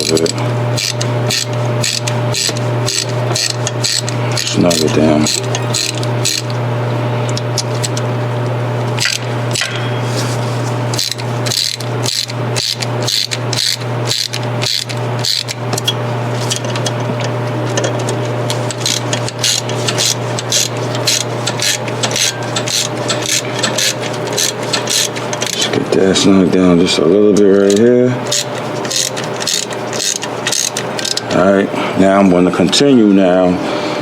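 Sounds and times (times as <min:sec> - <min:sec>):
hand ratchet clicking: 0:00.0 - 0:06.6, 0:07.3 - 0:08.0, 0:10.9 - 0:25.8, 0:27.3 - 0:31.4
steady low hum: 0:00.0 - 0:34.0.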